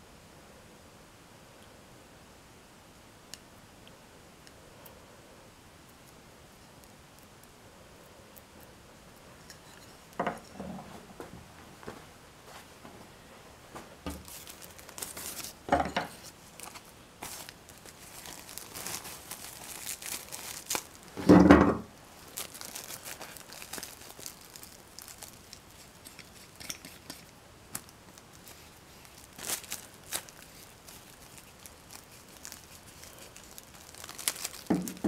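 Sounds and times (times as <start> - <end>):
hands crinkling and rustling: 13.7 - 21.3, 21.9 - 35.0.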